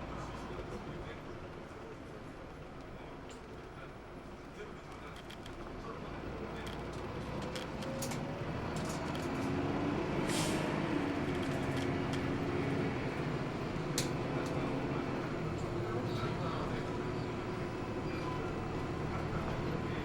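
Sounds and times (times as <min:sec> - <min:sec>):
bus diesel engine accelerating: 0:00.0 - 0:20.0
short air hiss: 0:10.3 - 0:10.7.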